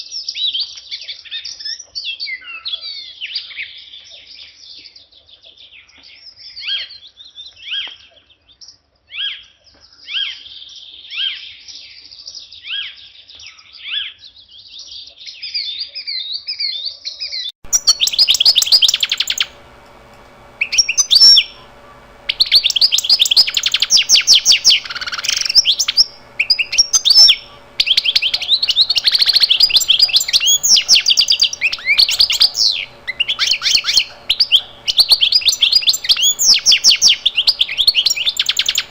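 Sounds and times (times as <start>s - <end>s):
faint steady hum: 17.6s - 38.9s
songbirds chirping and trilling: 17.7s - 38.9s.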